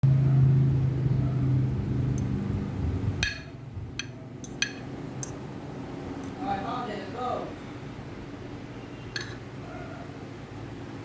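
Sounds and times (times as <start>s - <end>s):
tableware clinks: 3.2s - 5.4s, 9.1s - 9.5s.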